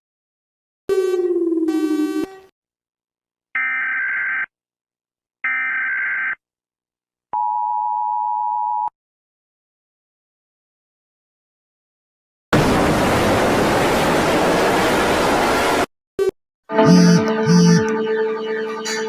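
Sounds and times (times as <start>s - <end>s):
dual-tone attention signal: 16.2s - 19.0s
falling horn-like tone: 16.7s - 18.1s
buzzy data bursts: 16.8s - 17.9s.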